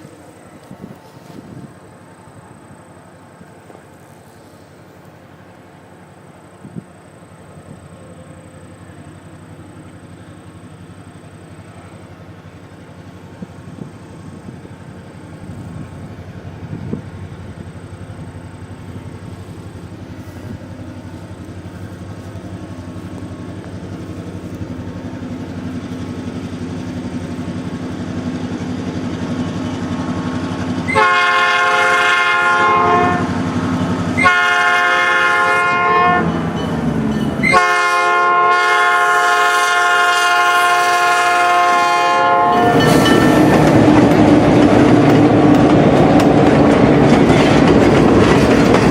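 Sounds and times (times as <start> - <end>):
diesel locomotive engine: 0.0 - 48.9
train rumbling past: 0.0 - 48.9
multi-chime air horn blasts: 37.4 - 43.5.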